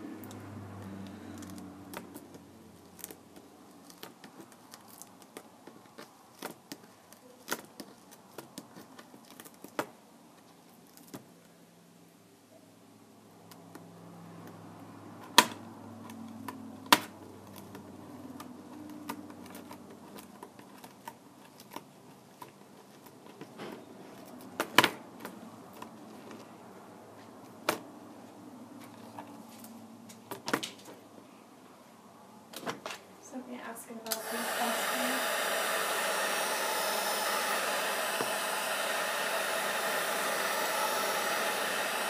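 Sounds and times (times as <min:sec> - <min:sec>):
hand tools and plastic clicking: 0:15.2 - 0:26.5.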